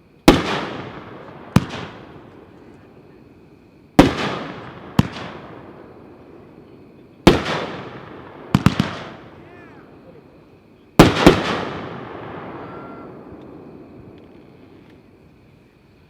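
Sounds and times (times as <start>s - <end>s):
firework bangs with echo: 0.3s - 2.9s, 4.0s - 10.0s, 11.0s - 14.8s.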